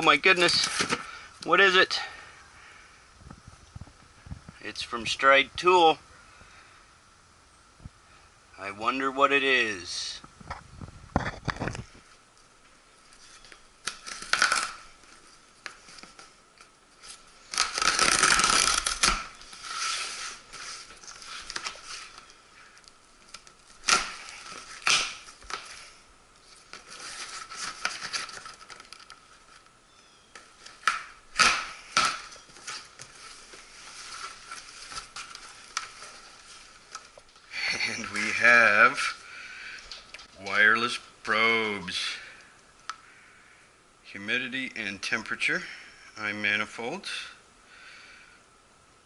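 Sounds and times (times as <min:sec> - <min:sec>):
cardboard and packing handling: 0:00.5 - 0:01.2, 0:17.0 - 0:29.6, 0:30.3 - 0:38.4.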